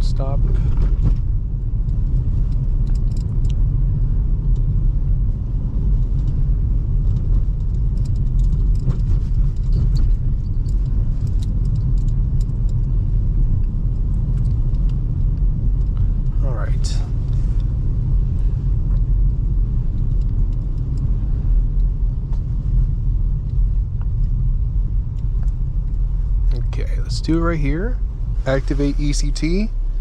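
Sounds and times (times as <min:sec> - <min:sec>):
road and engine rumble in car: 0:00.0 - 0:30.0.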